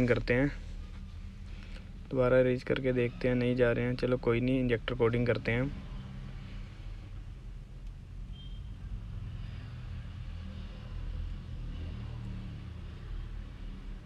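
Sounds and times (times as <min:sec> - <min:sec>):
faint high beep: 0:08.3 - 0:08.8.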